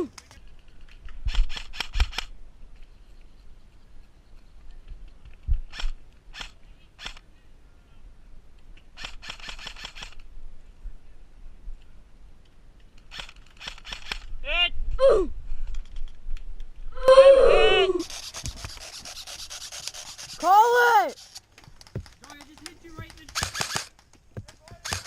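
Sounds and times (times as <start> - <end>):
airsoft gun shots: 22.9 - 25.0.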